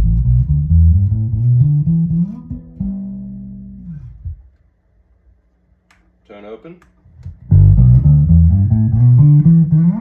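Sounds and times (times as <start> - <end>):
muted electric bass notes: 0.0 - 4.4, 7.5 - 10.0.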